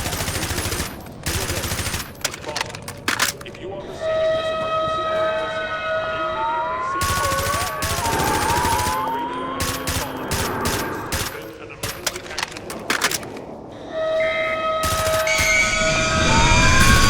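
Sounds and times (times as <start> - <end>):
wavering siren-like tone: 13.9 - 17.0.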